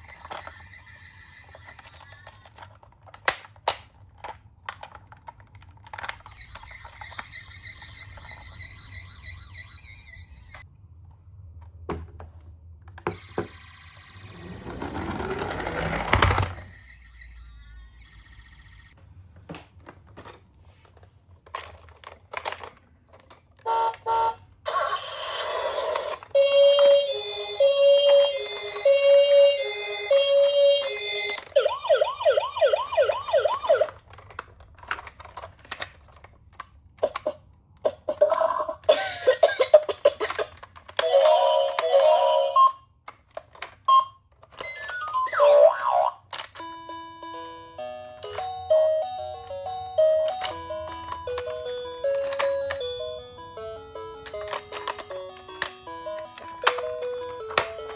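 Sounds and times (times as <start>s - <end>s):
toy electronic siren: 0.0s - 2.6s, 6.1s - 10.6s, 16.6s - 19.0s, 23.7s - 34.0s, 41.0s - 42.8s, 43.9s - 46.2s
rising whir: 14.0s - 16.6s.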